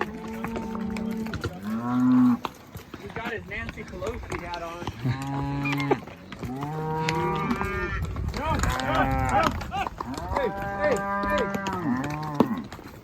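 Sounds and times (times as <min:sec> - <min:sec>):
cattle mooing: 0:00.0 - 0:02.5, 0:04.9 - 0:12.8.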